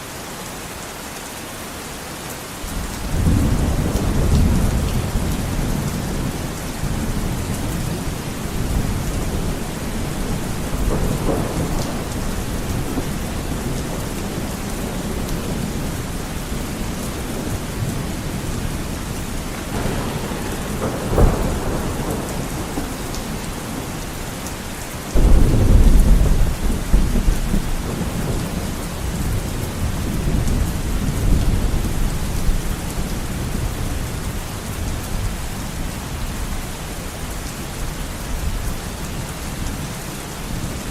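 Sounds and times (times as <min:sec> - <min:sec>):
heavy rain hitting a window: 0:00.0 - 0:40.9
deep thunder rumble: 0:02.7 - 0:36.6
sharp thunder crack: 0:19.3 - 0:24.4, 0:25.2 - 0:28.6.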